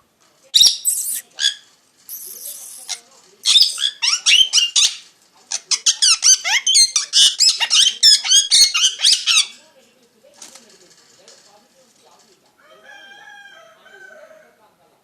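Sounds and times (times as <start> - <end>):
parrot chirping: 0.6 - 9.6.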